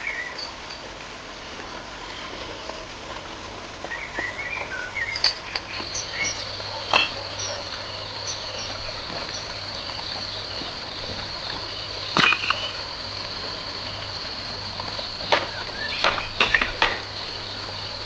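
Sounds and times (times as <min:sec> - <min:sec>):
high insect drone: 0:00.0 - 0:18.0
faint bird chirps: 0:03.9 - 0:12.9
sharp knocks: 0:15.3 - 0:17.1.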